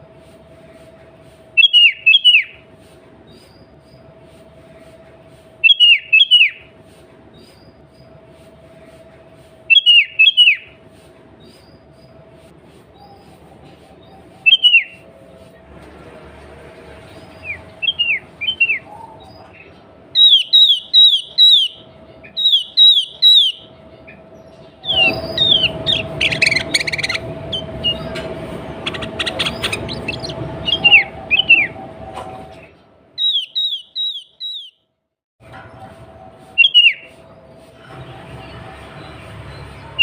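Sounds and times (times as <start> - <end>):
bird whistled calls: 1.6 - 2.6, 5.6 - 6.7, 9.7 - 10.8, 14.0 - 15.1, 17.3 - 24.2, 24.8 - 28.2, 28.8 - 31.8, 33.2 - 34.8, 36.6 - 37.2.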